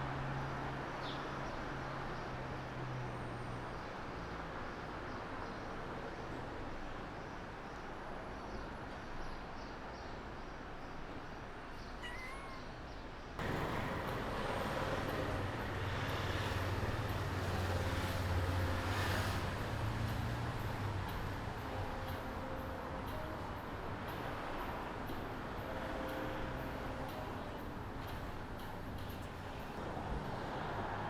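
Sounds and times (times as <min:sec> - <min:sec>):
street noise: 0:00.0 - 0:31.0
cat meow: 0:12.0 - 0:12.7.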